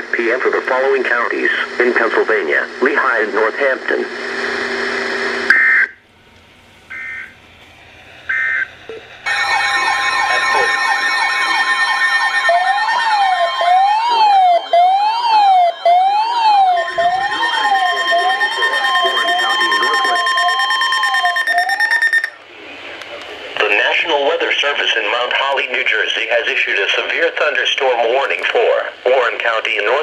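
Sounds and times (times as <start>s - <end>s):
rising and falling alert tones: 10.8s - 22.4s
two-tone data beeps: 15.8s - 22.4s.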